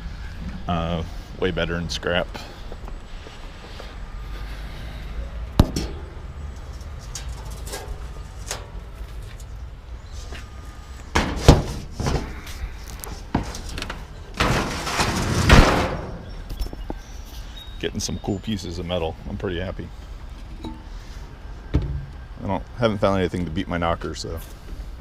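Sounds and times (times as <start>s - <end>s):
scrap metal clanking: 11.2s - 16.3s
metal clattering rattle: 13.3s - 16.3s.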